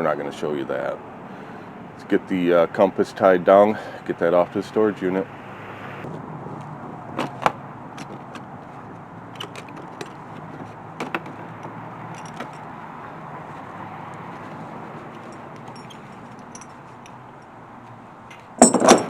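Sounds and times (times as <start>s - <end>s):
vehicle idling: 6.0s - 19.0s
metal hardware clinking: 11.0s - 12.8s, 15.1s - 17.5s, 18.3s - 19.0s.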